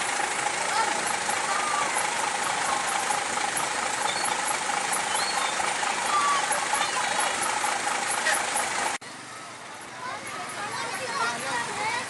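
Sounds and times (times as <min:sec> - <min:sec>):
bus engine running: 0:00.0 - 0:12.0
street noise: 0:00.0 - 0:12.0.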